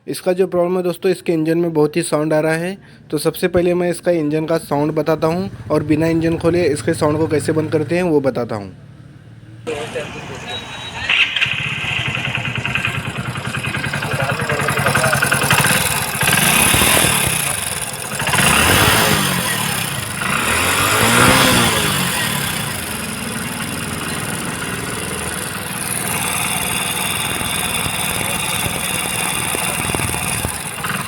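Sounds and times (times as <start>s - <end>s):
motorcycle engine revving and idling: 4.9s - 31.0s
valve-train clatter: 9.8s - 31.0s.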